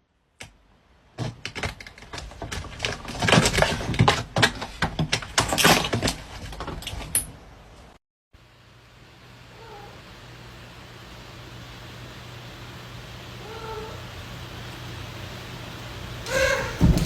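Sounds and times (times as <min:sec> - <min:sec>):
rapid clicks and knocks: 0:01.2 - 0:07.0.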